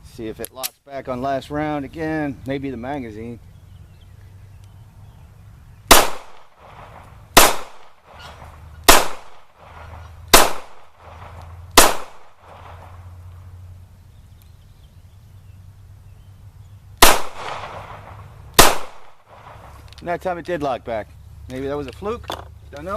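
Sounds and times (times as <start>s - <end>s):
pistol gunshots: 5.9s - 13.0s, 17.0s - 19.6s.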